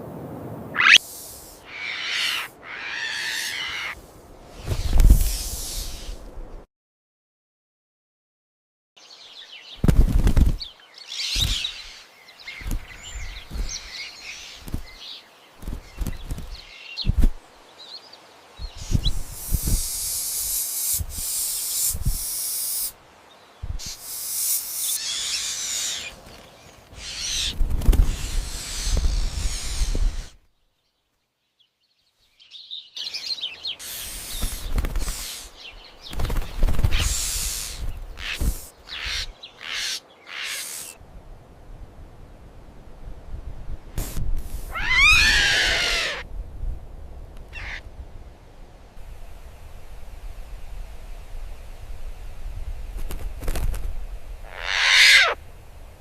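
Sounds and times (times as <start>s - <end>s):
bursts of hiss-like noise: 0.6s - 6.4s, 15.6s - 26.2s, 26.9s - 30.4s, 33.7s - 41.0s, 43.9s - 46.3s
birds chirping: 0.7s - 1.0s, 1.6s - 4.0s, 10.6s - 41.0s, 54.4s - 55.4s.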